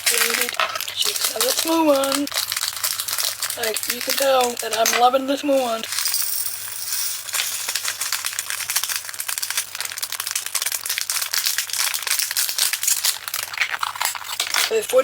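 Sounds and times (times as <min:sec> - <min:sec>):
bag crinkling: 0:00.0 - 0:14.8
beads pouring into a container: 0:05.6 - 0:13.4.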